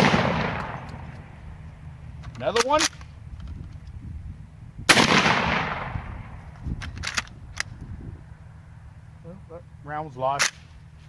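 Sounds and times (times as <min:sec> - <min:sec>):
shotgun shot echoing: 0:00.0 - 0:01.2, 0:04.9 - 0:06.4
shotgun action clicks: 0:06.7 - 0:07.8.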